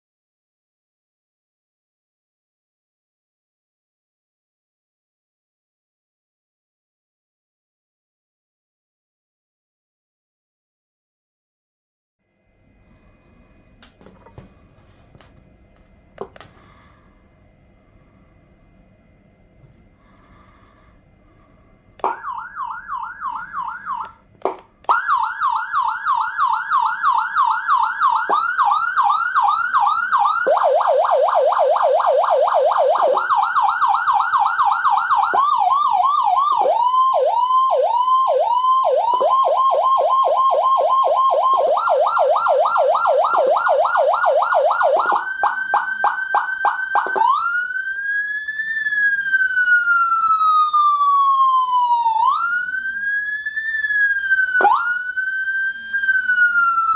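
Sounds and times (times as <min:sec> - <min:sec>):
electronic siren: 0:22.0 - 0:56.9.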